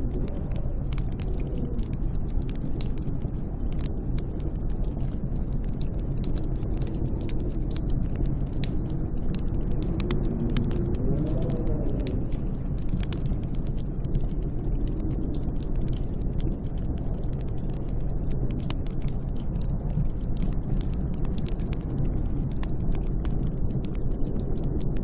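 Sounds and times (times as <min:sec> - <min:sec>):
snowstorm wind rumbling: 0:00.0 - 0:25.0
wavering wind moan: 0:09.8 - 0:13.2.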